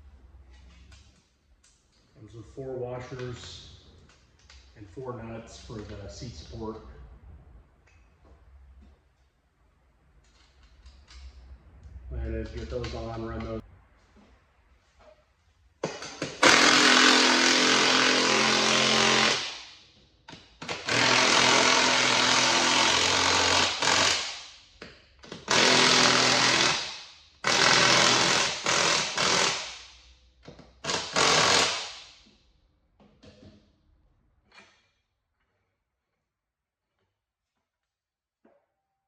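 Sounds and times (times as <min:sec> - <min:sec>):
impact wrench hammering: 0:15.8 - 0:24.6, 0:25.2 - 0:32.4.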